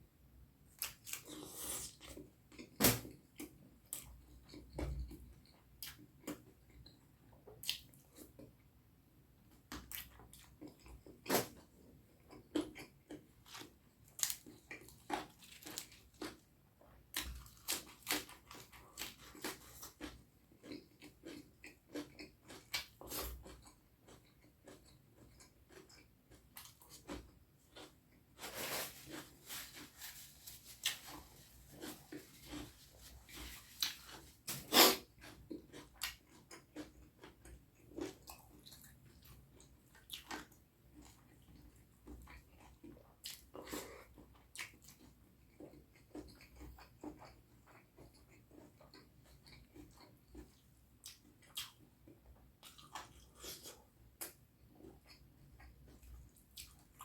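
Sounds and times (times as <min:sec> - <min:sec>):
mouth chewing and smacking: 0:17.1 - 0:28.2, 0:33.3 - 0:57.0.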